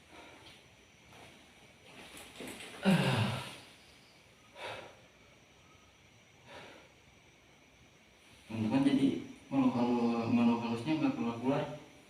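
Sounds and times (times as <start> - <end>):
man sighing heavily: 2.8 - 3.6
short breaths: 4.4 - 5.1, 6.4 - 7.1.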